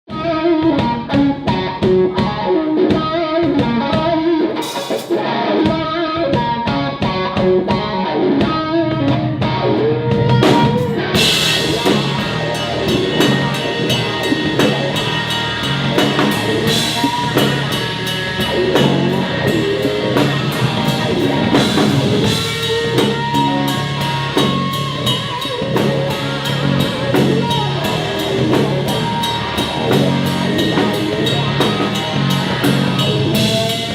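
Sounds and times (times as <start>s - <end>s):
drum beats: 0.1s - 33.9s
guitar riff: 0.1s - 33.9s
rock band playing: 0.1s - 33.9s
crashing cymbals: 11.2s - 33.9s.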